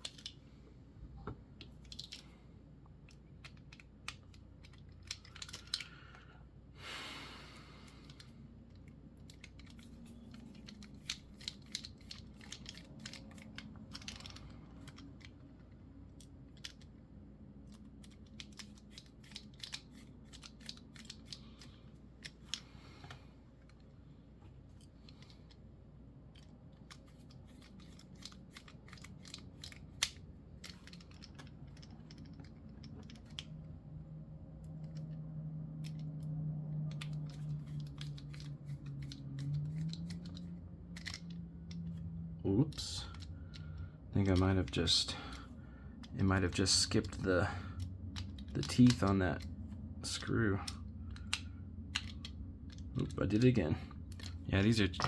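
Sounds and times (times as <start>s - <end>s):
small metal clicks and taps: 35.8s - 42.1s, 50.1s - 55.0s.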